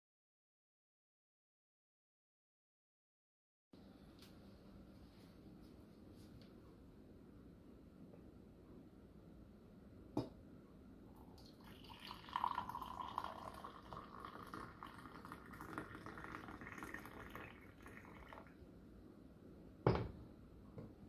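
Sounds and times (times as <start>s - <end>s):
coffee pouring into cup: 11.2s - 18.6s
knock: 19.8s - 20.2s.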